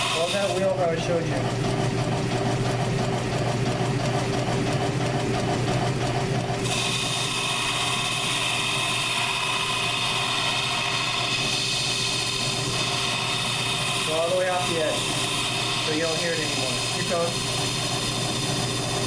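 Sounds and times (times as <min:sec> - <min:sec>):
lathe humming: 0:00.0 - 0:19.0
high-pitched cutting whine: 0:06.6 - 0:19.0.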